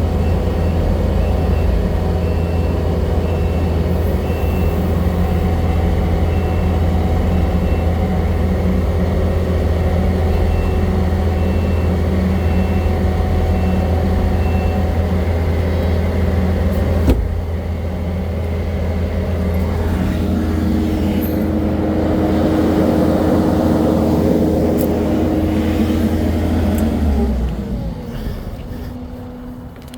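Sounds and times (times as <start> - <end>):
backup alarm beeping: 0.0 - 16.6
diesel engine running under load: 0.0 - 29.9.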